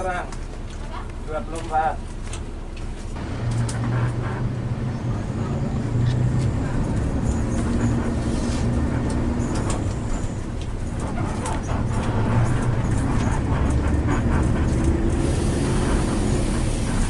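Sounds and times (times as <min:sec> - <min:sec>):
bus engine rumbling: 0:00.0 - 0:17.0
light rattles and clicks: 0:06.0 - 0:15.3.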